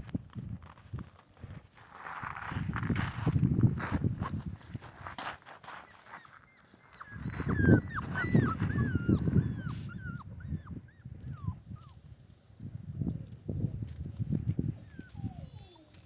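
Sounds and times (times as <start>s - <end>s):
puppy whimpering: 5.8s - 12.0s, 14.8s - 16.0s.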